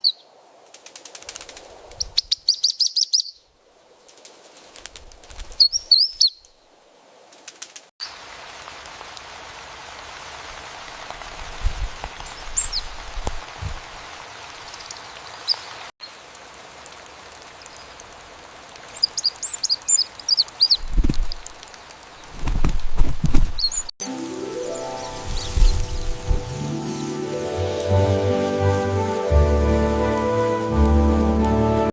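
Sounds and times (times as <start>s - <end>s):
wing flaps: 0.7s - 2.3s, 4.1s - 5.8s, 11.4s - 13.9s, 20.8s - 21.6s, 22.2s - 23.9s, 25.1s - 26.8s
low thuds: 20.8s - 21.5s, 22.4s - 23.9s, 25.3s - 26.6s
steady hiss: 24.0s - 31.2s.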